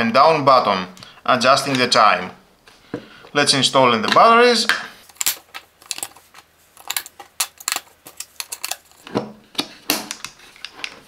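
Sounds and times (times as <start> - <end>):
batteries clicking into compartment: 5.1 - 6.2, 6.8 - 9.1.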